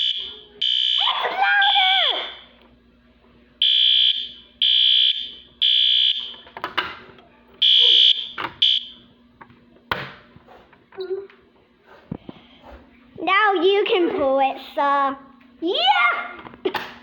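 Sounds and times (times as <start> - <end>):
alarm chirp: 0.0 - 2.2, 3.6 - 6.4, 7.6 - 9.0
fire alarm beeping: 0.0 - 2.5, 3.6 - 6.5, 7.6 - 9.1.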